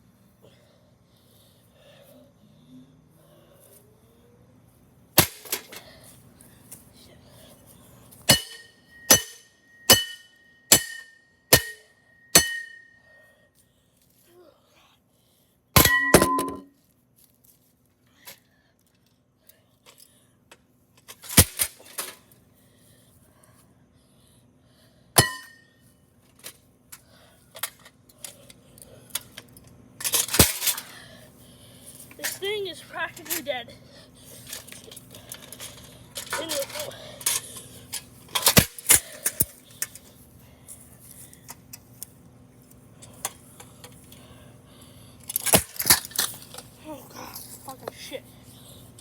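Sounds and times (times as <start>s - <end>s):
sledgehammer striking metal: 8.3s - 13.0s, 15.8s - 16.7s, 25.2s - 25.6s.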